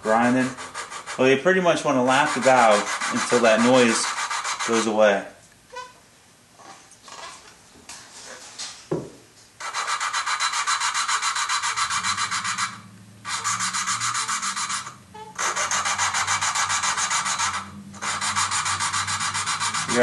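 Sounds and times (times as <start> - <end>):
valve lapping gritty grinding: 2.1 - 4.9, 10.7 - 20.0.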